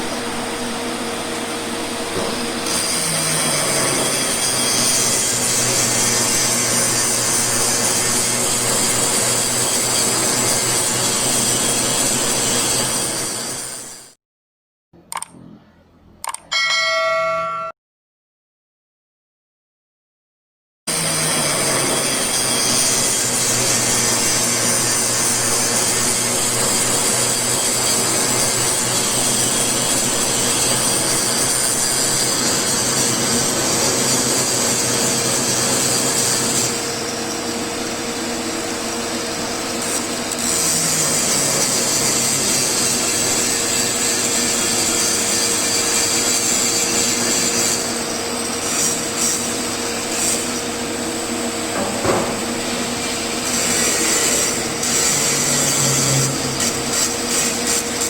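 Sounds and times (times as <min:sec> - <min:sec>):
welding arc hiss and buzz: 0:21.4 - 0:58.0.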